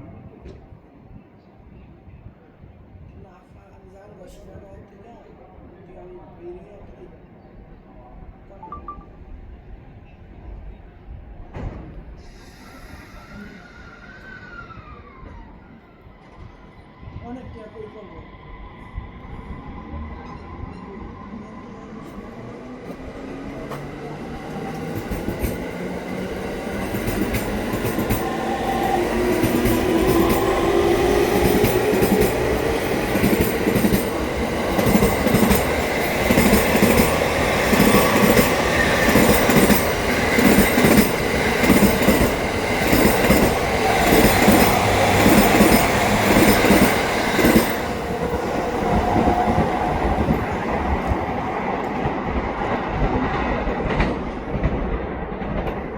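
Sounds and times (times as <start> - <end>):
train traction motors whining: 12.2 - 22.2, 22.8 - 52.0
wheels clattering over rail joints: 23.7 - 51.1.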